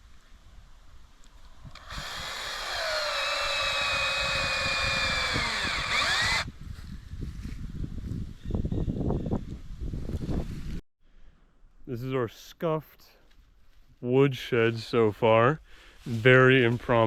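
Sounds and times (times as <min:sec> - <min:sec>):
power drill whining: 0:01.7 - 0:06.5.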